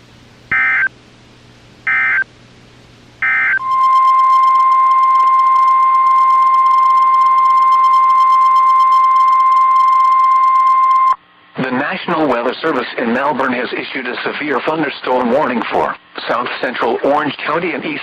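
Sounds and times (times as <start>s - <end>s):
digital data tone bursts: 0.5s - 0.9s, 1.9s - 2.2s, 3.2s - 11.2s
steady warning alarm tone: 0.5s - 0.9s, 1.9s - 2.2s, 3.2s - 11.2s.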